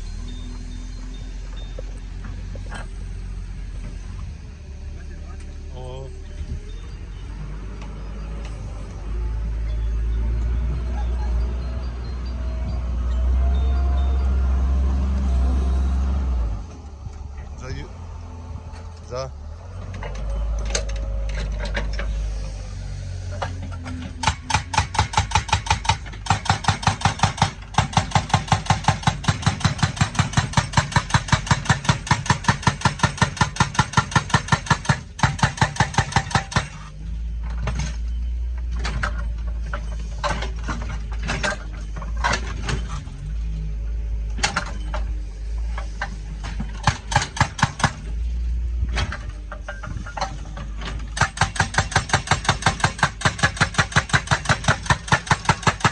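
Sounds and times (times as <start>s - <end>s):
excavator engine running: 0.0s - 55.9s
hydraulic breaker hammering: 23.3s - 36.9s, 45.8s - 48.2s, 48.9s - 55.9s.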